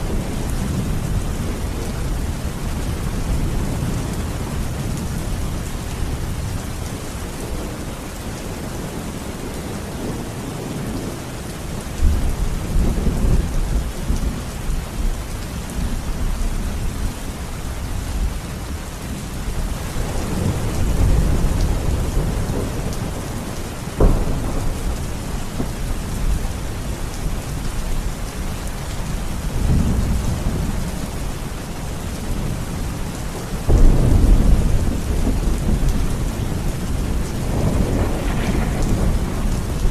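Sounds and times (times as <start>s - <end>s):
heavy rain hiss: 0.0s - 39.9s
rolling thunder: 19.6s - 31.0s, 32.2s - 39.9s
sharp thunder crack: 24.0s - 26.4s, 33.7s - 39.9s.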